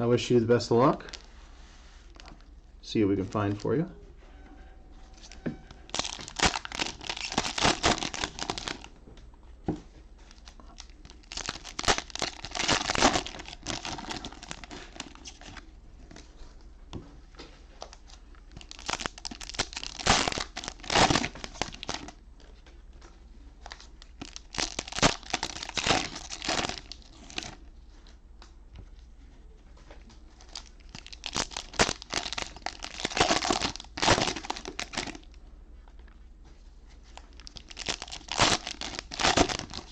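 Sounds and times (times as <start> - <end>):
cellophane wrappers tearing and crinkling: 5.9 - 8.9, 10.3 - 15.7, 18.5 - 22.1, 23.7 - 27.6, 30.4 - 35.3, 37.2 - 39.9.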